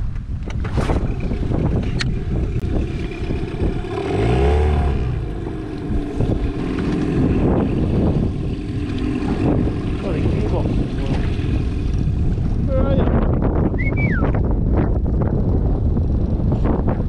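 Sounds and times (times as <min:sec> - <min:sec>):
wind buffeting microphone: 0:00.0 - 0:17.0
outboard motor revving: 0:00.5 - 0:17.0.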